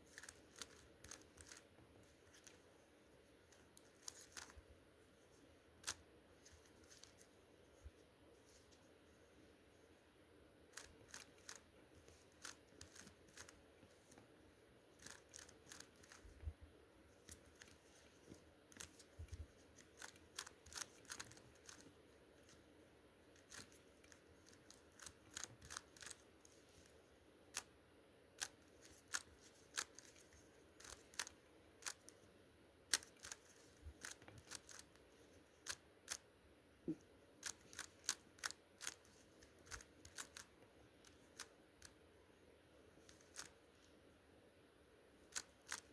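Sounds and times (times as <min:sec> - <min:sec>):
speed cube clicking: 0:00.1 - 0:01.7, 0:03.8 - 0:04.6, 0:10.7 - 0:13.6, 0:15.0 - 0:16.4, 0:18.7 - 0:22.6, 0:23.4 - 0:26.3, 0:27.5 - 0:27.7, 0:28.4 - 0:32.2, 0:32.9 - 0:35.0, 0:35.6 - 0:36.2, 0:37.4 - 0:42.0, 0:43.0 - 0:43.6, 0:45.3 - 0:45.9.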